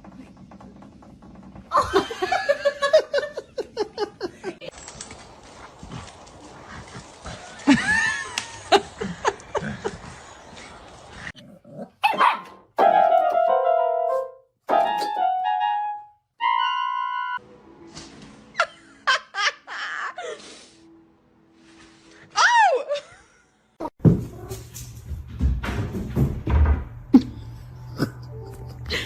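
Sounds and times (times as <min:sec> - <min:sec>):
dog yelping and barking: 0:12.0 - 0:12.6.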